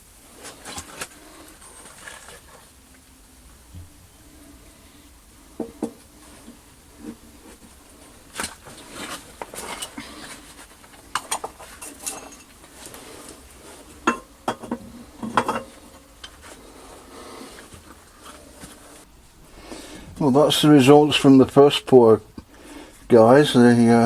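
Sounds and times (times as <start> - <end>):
metal pieces clinking and knocking: 11.2 - 12.6.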